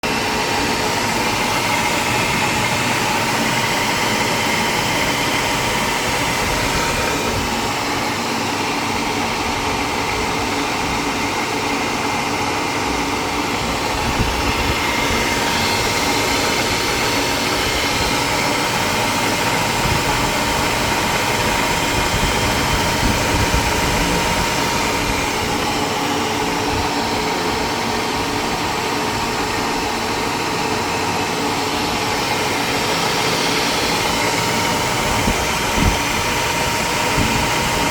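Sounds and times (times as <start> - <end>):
metal lathe running: 0.0 - 37.9.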